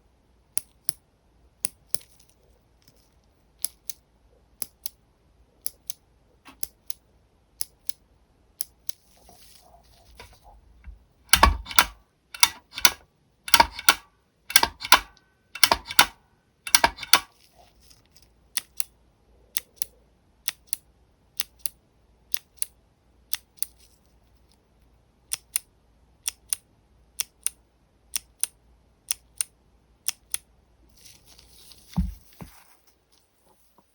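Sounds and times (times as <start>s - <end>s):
rustling: 2.0s - 3.4s, 9.0s - 11.0s, 17.3s - 18.4s, 30.9s - 33.9s
keyboard switch clicking: 11.3s - 17.3s.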